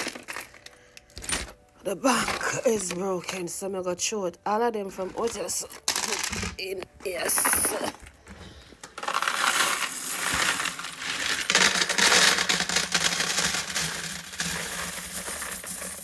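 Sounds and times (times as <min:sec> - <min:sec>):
coins pouring and jingling: 0:00.0 - 0:01.6, 0:05.2 - 0:08.2, 0:09.0 - 0:16.0.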